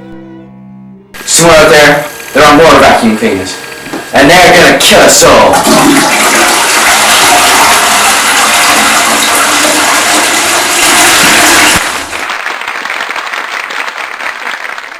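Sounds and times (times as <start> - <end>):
loud steady rushing noise: 1.2 - 5.2.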